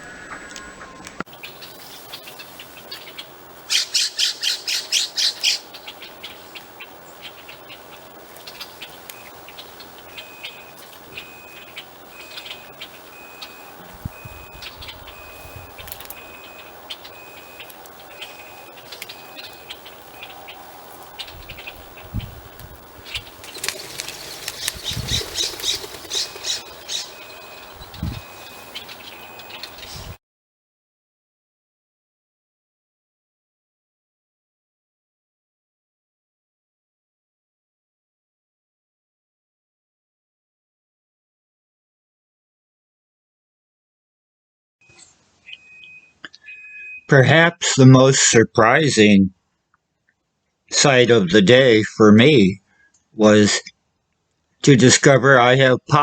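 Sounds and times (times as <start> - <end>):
jay harsh calls: 0.0 - 22.0, 22.8 - 29.7
bird chirps and ticks: 0.3 - 30.2, 44.8 - 47.1, 49.5 - 50.6, 52.8 - 54.6
wing-flap thuds: 23.2 - 26.8.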